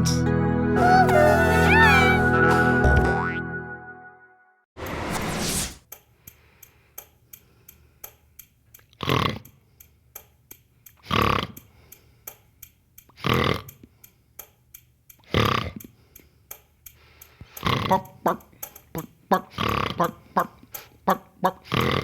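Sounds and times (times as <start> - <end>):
clock-like ticking: 5.9 - 22.0.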